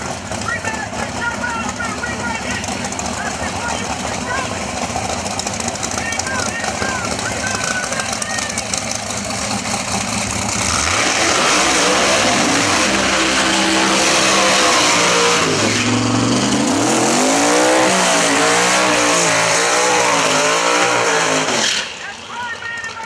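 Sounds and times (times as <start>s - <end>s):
race car engines revving: 0.0s - 23.0s.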